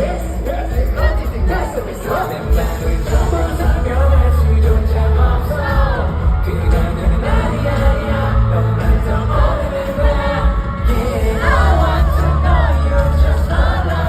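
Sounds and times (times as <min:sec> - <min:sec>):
backing track with heavy bass: 0:00.0 - 0:14.0
person singing pop song: 0:00.0 - 0:14.0.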